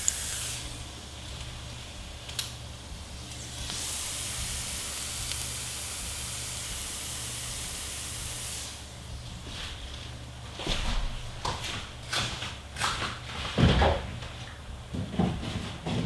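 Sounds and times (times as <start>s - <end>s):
bacon and eggs sizzling in a pan: 0.0s - 9.0s.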